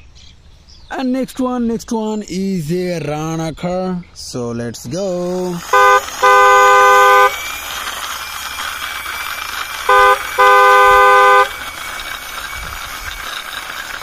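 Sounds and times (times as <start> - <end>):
two-note car horn: 5.7 - 7.4, 9.9 - 11.5.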